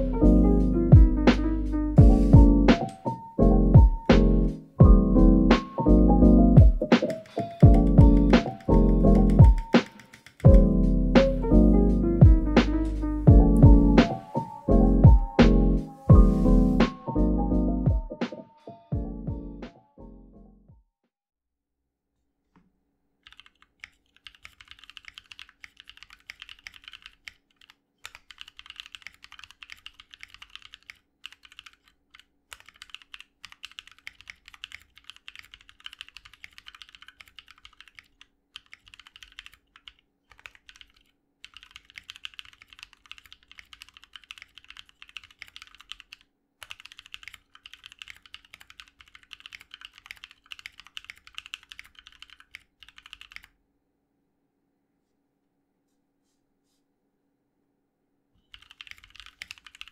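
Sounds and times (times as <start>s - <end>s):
mechanical keyboard typing: 6.6s - 11.5s, 23.2s - 53.5s, 58.5s - 59.9s.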